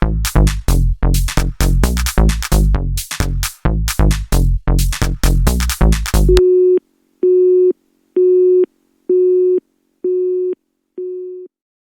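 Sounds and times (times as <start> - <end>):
telephone busy tone beeps: 6.3 - 11.5.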